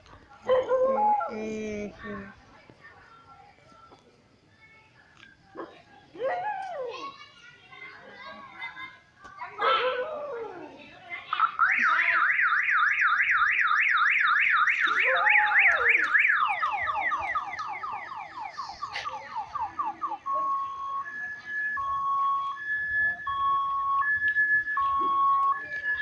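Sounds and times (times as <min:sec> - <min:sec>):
electronic bicycle horn siren: 0:11.4 - 0:26.0.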